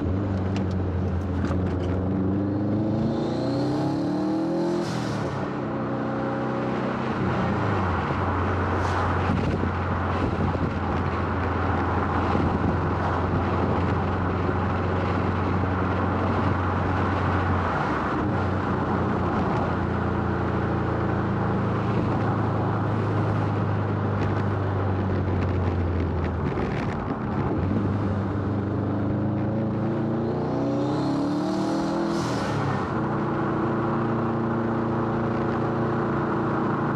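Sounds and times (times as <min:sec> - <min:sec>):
engine revving: 0:00.0 - 0:11.1, 0:26.5 - 0:34.5
car engine droning: 0:00.0 - 0:36.9
road noise: 0:00.0 - 0:36.9.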